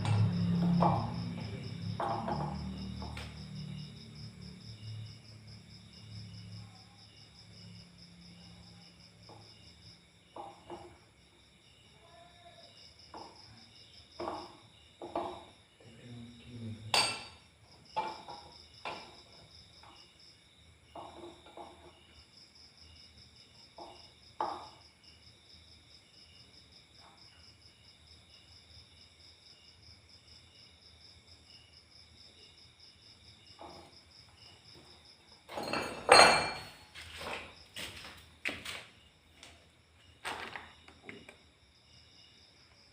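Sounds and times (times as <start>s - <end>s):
insects chirping: 0.0s - 42.9s
short knocks and clinks: 16.9s - 17.4s, 35.5s - 37.5s.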